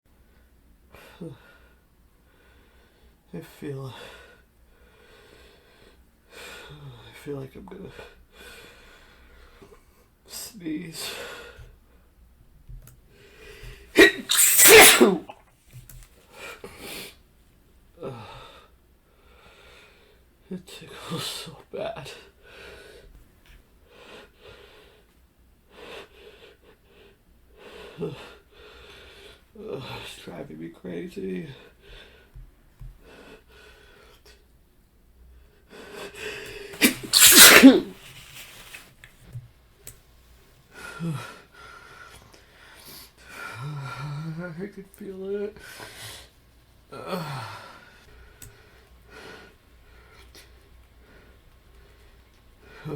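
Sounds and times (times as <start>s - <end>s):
man sneezing: 14.0s - 15.3s, 36.8s - 38.0s.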